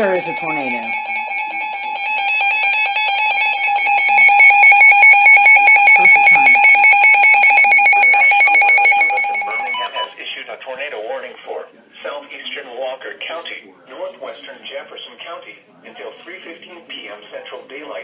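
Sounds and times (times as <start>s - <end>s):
two-tone alert tone: 0.0s - 10.1s.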